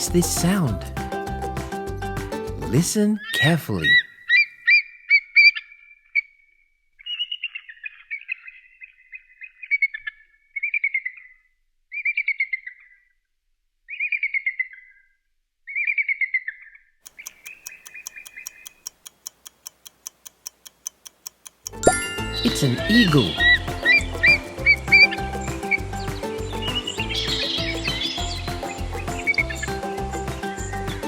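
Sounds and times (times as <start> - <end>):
eagle calling: 3.1 - 4.8, 21.9 - 29.7
clock ticking rapidly: 17.1 - 23.6.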